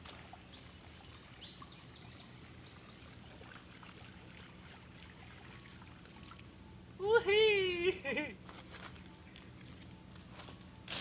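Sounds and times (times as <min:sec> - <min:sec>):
high-pitched hiss: 0:06.3 - 0:11.0.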